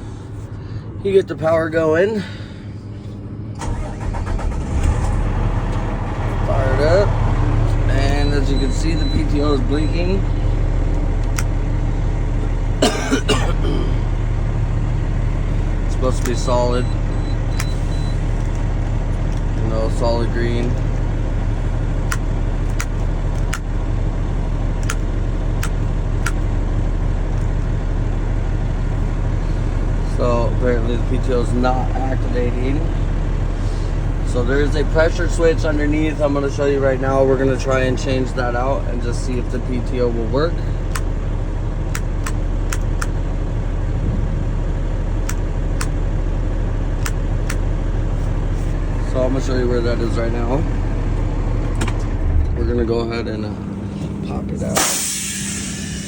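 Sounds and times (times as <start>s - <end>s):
truck engine idling: 0.0s - 56.0s
sharp clicks: 41.9s - 43.2s.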